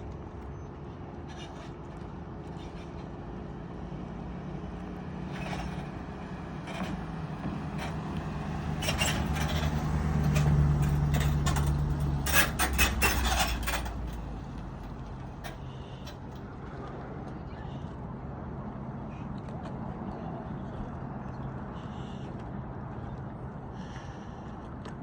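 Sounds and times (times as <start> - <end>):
motorboat engine humming: 0.0 - 24.9
knocks and scrapes: 1.3 - 3.2, 4.8 - 16.2.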